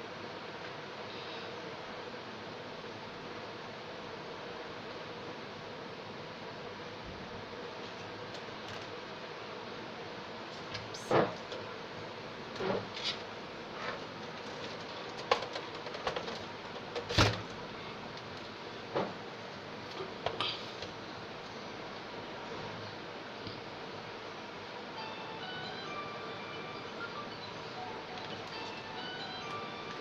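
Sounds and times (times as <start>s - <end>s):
computer parts clicking and knocking: 14.4s - 17.5s.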